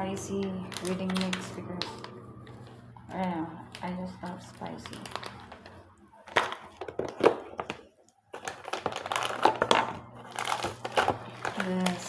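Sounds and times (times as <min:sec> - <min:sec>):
plastic packet crinkling: 0:00.3 - 0:12.0.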